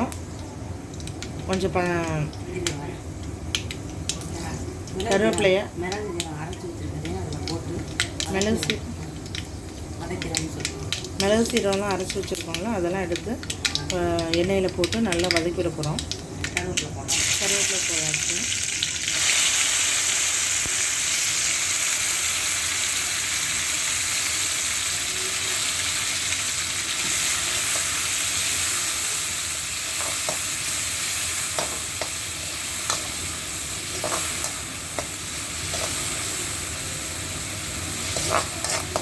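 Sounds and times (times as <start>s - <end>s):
spices sizzling in hot oil: 0.0s - 39.0s
spoon scraping a pan: 33.9s - 36.2s, 37.9s - 39.0s.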